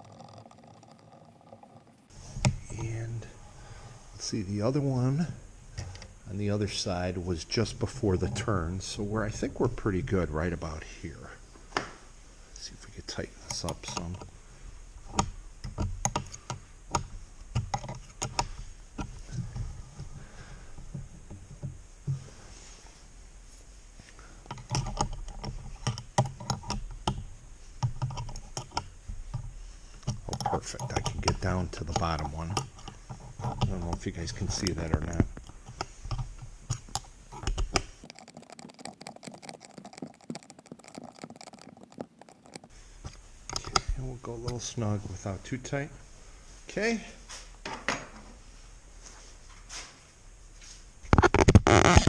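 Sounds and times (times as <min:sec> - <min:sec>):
metallic clicks of tools and hardware: 0:13.4 - 0:14.3, 0:15.1 - 0:19.1, 0:24.4 - 0:27.2, 0:43.5 - 0:43.9.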